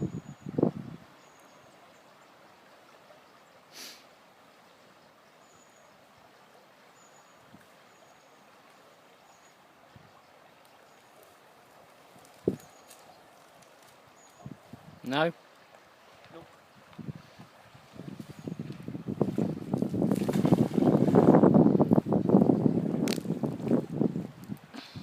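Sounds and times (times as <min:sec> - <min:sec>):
steady hiss: 0:03.7 - 0:04.2.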